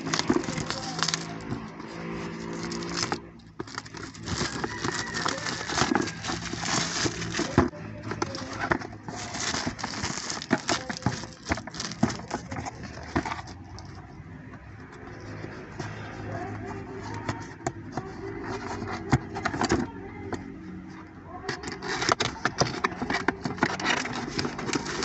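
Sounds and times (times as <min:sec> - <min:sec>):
packaging rustling and crinkling: 0:00.0 - 0:14.0, 0:21.6 - 0:25.0.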